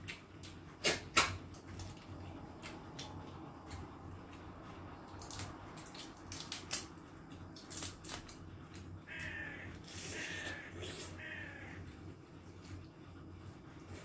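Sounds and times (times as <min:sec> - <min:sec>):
crab shells cracking: 0:05.2 - 0:07.0, 0:07.6 - 0:08.4
harsh calls: 0:09.0 - 0:12.1.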